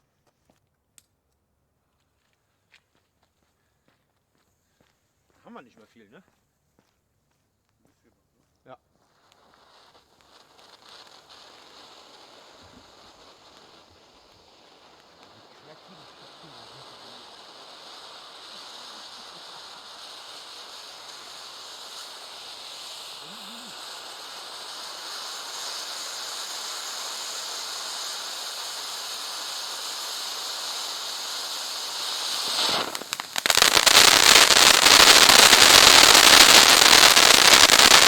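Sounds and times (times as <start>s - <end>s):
dense crackling of tiny pops: 7.7s - 38.0s
firework fountain hissing: 8.9s - 38.0s.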